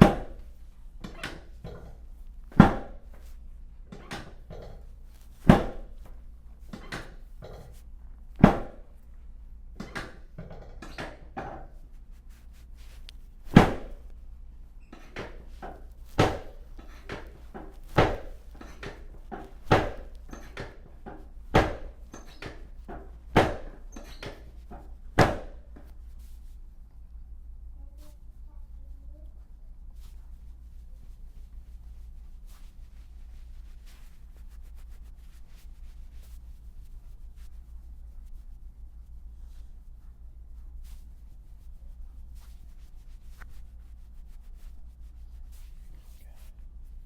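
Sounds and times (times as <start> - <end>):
sharp thunks against treatment table: 1.0 - 3.0, 5.4 - 6.0, 8.4 - 8.8, 13.5 - 14.1, 15.0 - 24.4.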